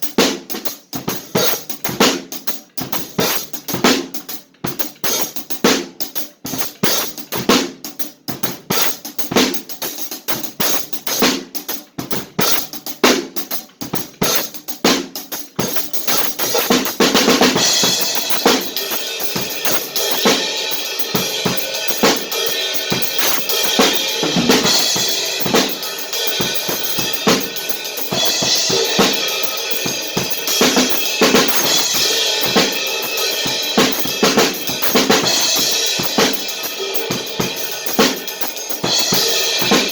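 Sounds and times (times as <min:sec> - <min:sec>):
drum hits: 0:11.9 - 0:39.9
cymbal wash: 0:17.5 - 0:39.9.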